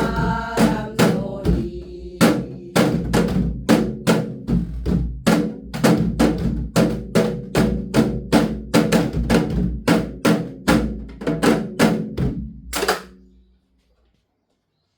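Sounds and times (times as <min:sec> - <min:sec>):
hourglass drum strokes: 0:00.0 - 0:03.4.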